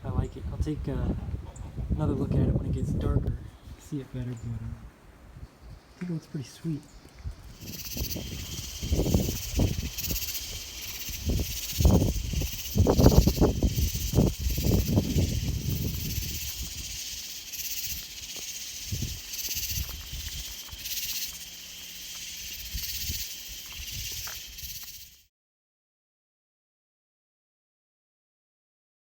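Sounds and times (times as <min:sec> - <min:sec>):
insects chirring: 0:06.9 - 0:25.3
low thumps and rumbles: 0:07.3 - 0:21.3.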